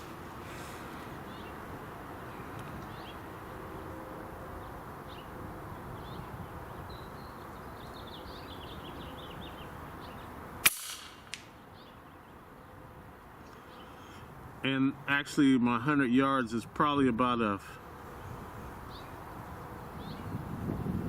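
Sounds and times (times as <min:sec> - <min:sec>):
wind: 0:00.0 - 0:21.0
small birds chirping: 0:01.0 - 0:03.3, 0:04.5 - 0:10.4, 0:11.6 - 0:12.8, 0:13.4 - 0:14.3, 0:18.1 - 0:20.9
air rifle shot: 0:10.6 - 0:11.5.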